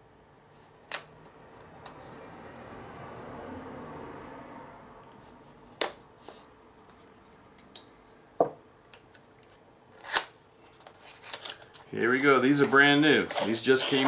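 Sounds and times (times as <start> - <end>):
packaging scrape: 10.0 - 14.0.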